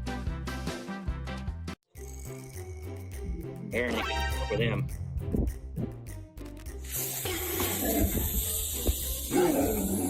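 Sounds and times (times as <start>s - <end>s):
music with steady beat: 0.1s - 6.9s.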